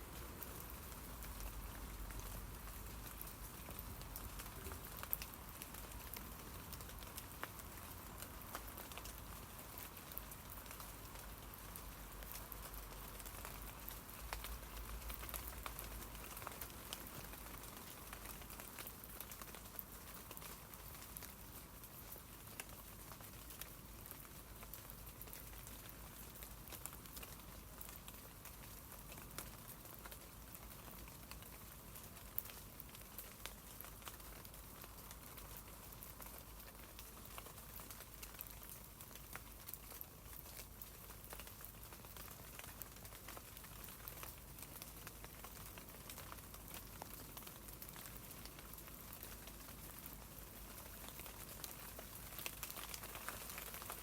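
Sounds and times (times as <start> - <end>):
rain on tree leaves: 0.0 - 54.0.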